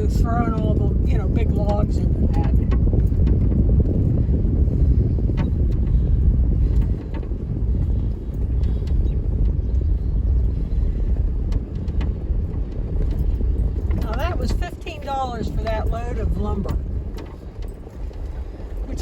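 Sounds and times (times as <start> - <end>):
vehicle road and engine rumble: 0.0 - 19.0.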